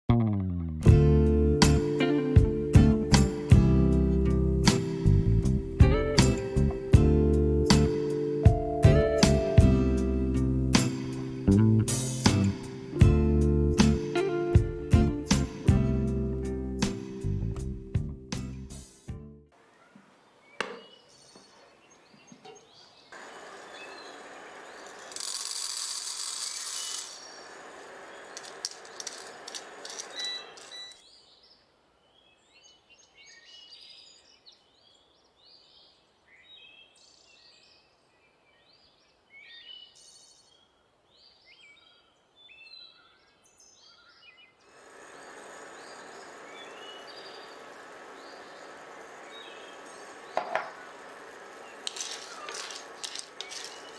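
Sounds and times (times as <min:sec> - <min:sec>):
steady cooking hiss: 0:23.2 - 0:25.9, 0:26.5 - 0:30.7, 0:44.7 - 0:53.9.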